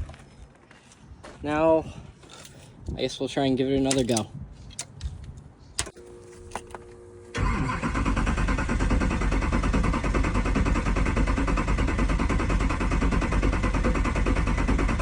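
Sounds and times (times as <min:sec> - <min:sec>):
diesel engine cranking: 0:05.8 - 0:15.0.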